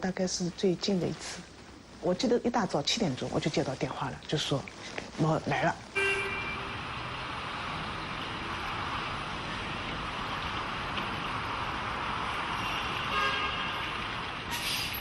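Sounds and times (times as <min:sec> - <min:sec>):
car horn tooting: 0:05.5 - 0:06.8, 0:12.6 - 0:14.0
passing vehicles hum: 0:05.5 - 0:15.0.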